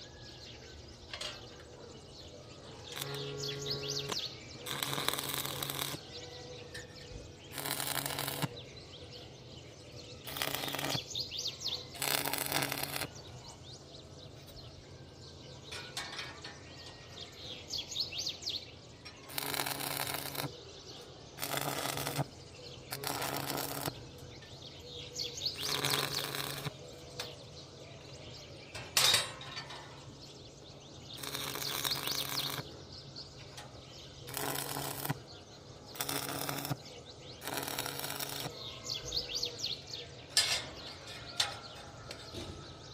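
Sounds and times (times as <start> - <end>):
electric welding arc crackling: 2.9 - 6.1, 7.5 - 8.6, 10.3 - 13.2, 19.3 - 20.6, 21.4 - 24.1, 25.4 - 26.8, 31.2 - 32.8, 34.2 - 35.3, 35.9 - 38.6.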